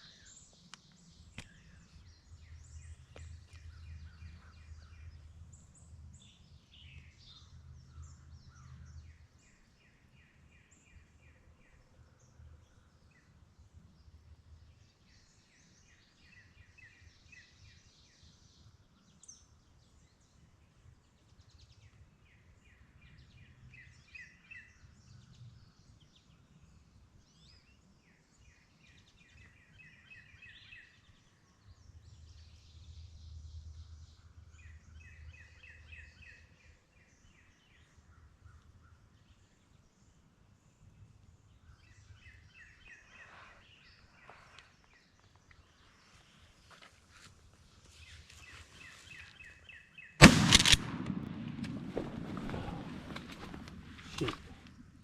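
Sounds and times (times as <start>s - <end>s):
songbirds singing: 0.0s - 55.0s
low steady rumble: 50.2s - 55.0s.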